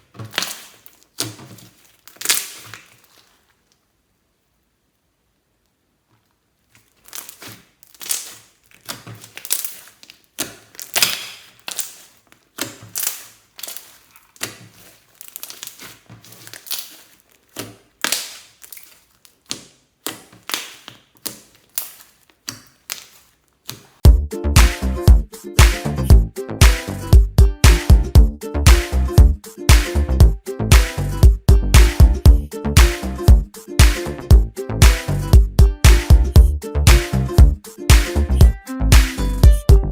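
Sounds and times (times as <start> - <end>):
slime squelching and popping: 0.0 - 3.8, 6.6 - 24.0
dance music with heavy beat: 24.0 - 39.8.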